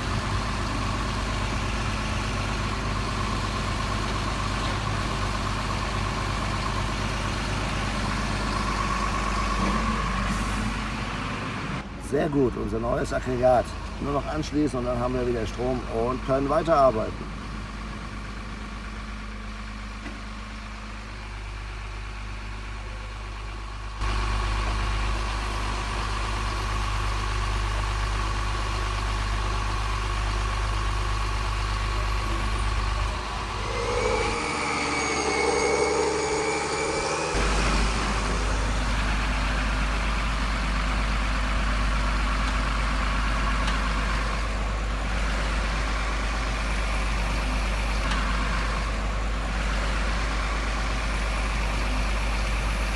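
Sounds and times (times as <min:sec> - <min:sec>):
simulated diesel truck engine idling: 0:00.0 - 0:20.0.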